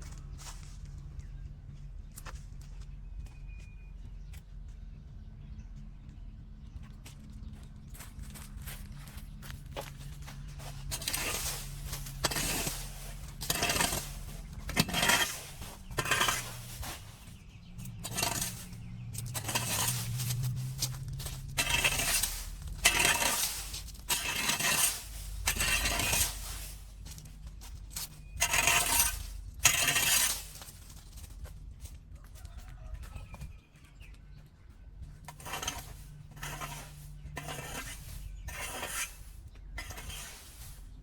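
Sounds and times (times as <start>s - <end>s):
metal tool scraping and clinking: 10.9s - 17.0s, 17.9s - 26.6s, 35.3s - 39.1s.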